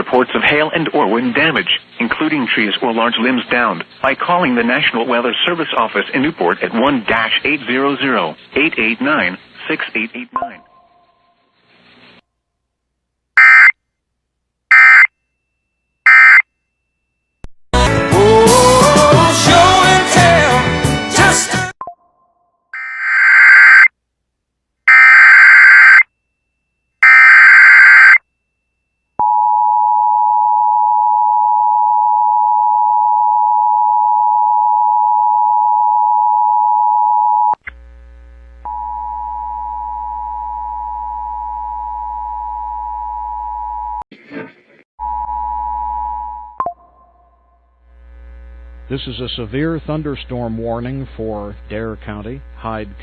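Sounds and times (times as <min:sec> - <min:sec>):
data tone bursts: 0:13.4 - 0:13.7, 0:14.7 - 0:15.1, 0:16.1 - 0:16.4, 0:22.8 - 0:23.9.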